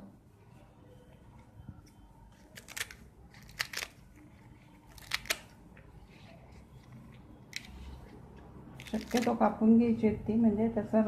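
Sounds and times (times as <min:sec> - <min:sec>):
leaves being cut clicks: 0:02.6 - 0:04.0, 0:04.9 - 0:05.5, 0:08.8 - 0:09.4.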